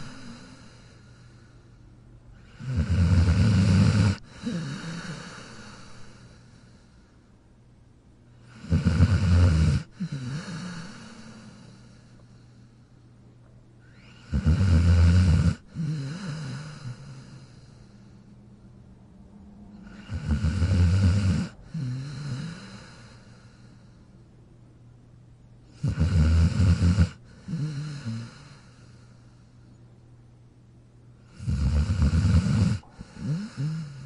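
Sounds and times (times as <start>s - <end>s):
dog snoring: 2.4s - 6.7s, 8.4s - 12.0s, 13.8s - 17.9s, 19.8s - 23.8s, 25.7s - 29.1s, 31.2s - 34.0s.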